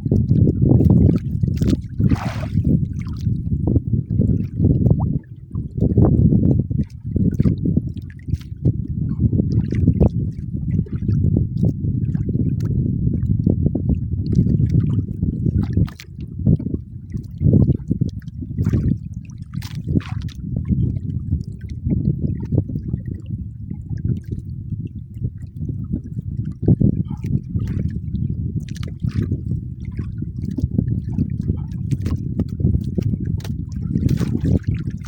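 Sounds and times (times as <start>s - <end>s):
low rumble: 0.0s - 7.2s
water sloshing against boat hull: 0.0s - 13.3s, 14.3s - 35.0s
water splashes: 0.8s - 3.5s, 32.9s - 35.0s.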